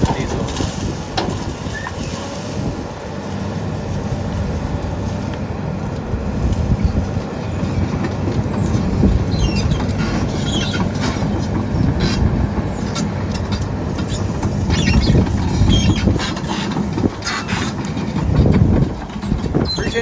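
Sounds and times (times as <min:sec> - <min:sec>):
excavator diesel engine running: 0:00.0 - 0:20.0
machine squealing: 0:07.4 - 0:20.0.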